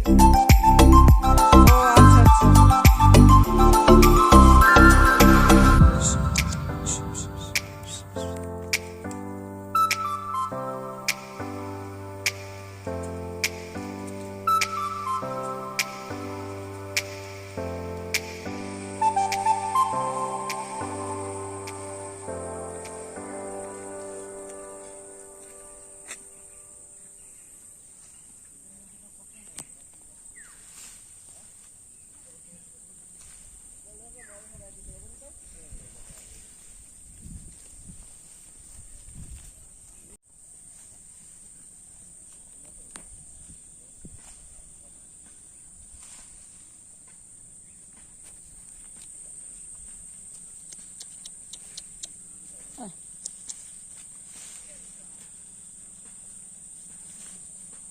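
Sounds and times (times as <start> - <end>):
high-pitched insect chorus: 0.0 - 28.8, 40.7 - 57.9
short falling chirp: 3.4 - 8.4.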